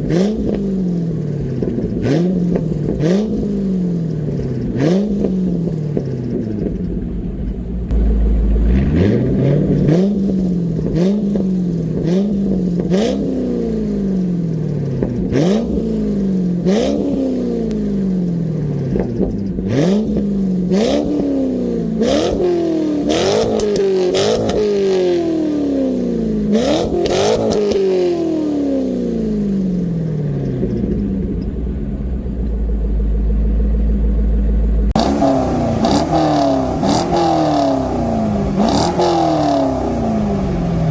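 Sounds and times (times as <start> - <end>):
car engine revving hard: 0.0 - 6.8, 7.9 - 31.0, 34.9 - 40.9
exhaust cracks: 0.0 - 40.9.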